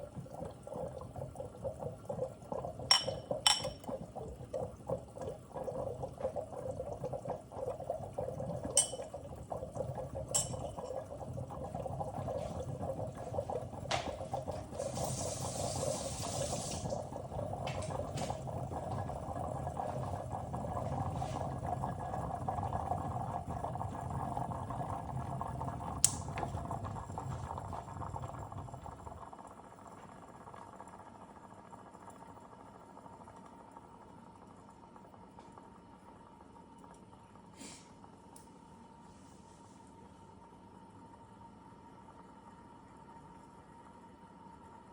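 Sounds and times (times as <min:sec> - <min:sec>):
coffee maker bubbling: 0:00.0 - 0:44.9
brief hiss: 0:37.6 - 0:37.9.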